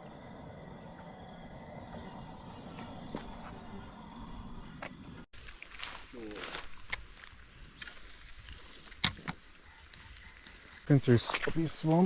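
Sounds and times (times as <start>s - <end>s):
insects droning: 0.0s - 6.6s.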